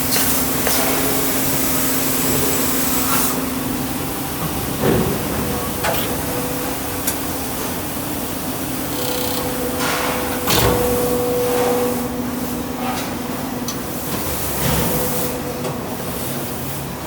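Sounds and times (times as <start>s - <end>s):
machine humming: 1.0s - 17.0s
machine hisses: 8.9s - 10.2s
machine clunks: 8.9s - 12.2s.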